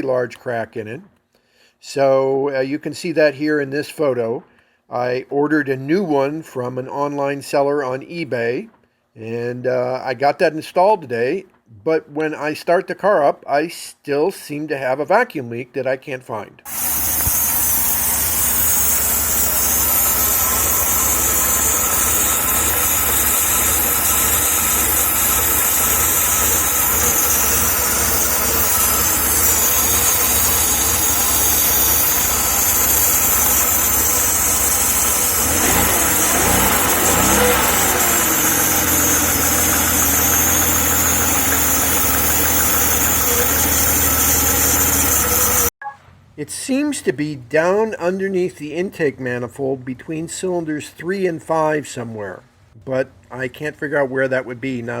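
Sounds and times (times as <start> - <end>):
high hiss: 16.7 - 45.6
car engine idling roughly: 16.7 - 45.7.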